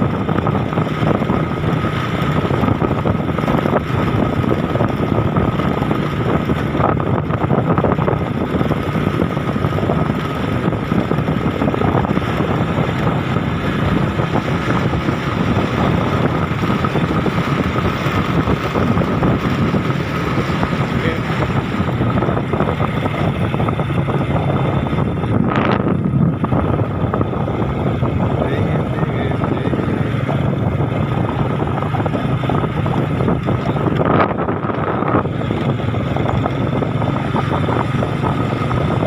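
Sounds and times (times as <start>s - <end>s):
vehicle engine and road noise: 0.0s - 39.0s
wind buffeting microphone: 0.0s - 39.0s.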